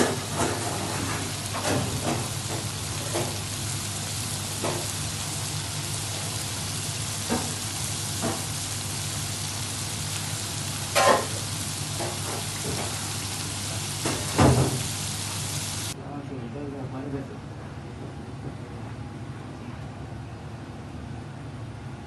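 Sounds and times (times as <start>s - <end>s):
food sizzling in a pan: 0.0s - 16.0s.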